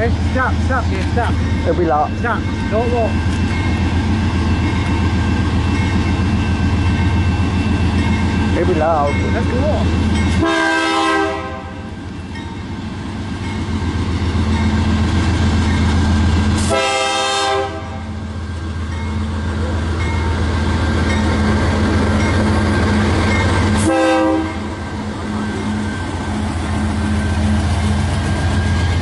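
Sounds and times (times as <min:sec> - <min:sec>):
diesel locomotive engine rumbling: 0:00.0 - 0:29.0
train air horn blasts: 0:10.4 - 0:11.9, 0:16.6 - 0:18.1, 0:23.8 - 0:24.7.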